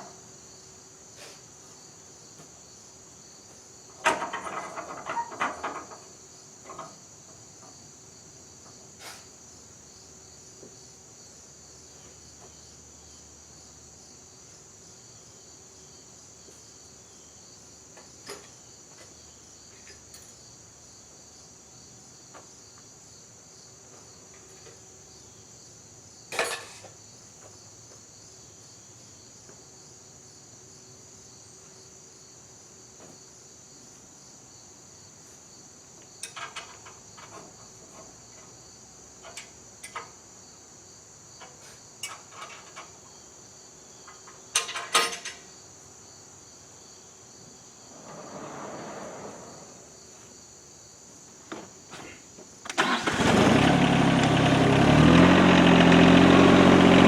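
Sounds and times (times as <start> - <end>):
crickets chirring: 0.0 - 53.3
clanks and knocks: 4.0 - 7.0.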